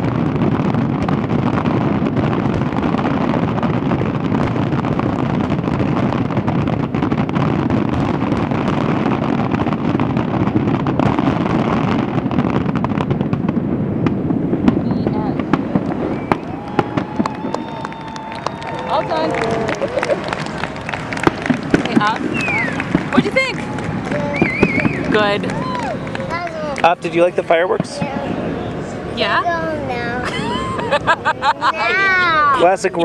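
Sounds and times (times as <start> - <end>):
fireworks bursts and booms: 0.0 - 33.0.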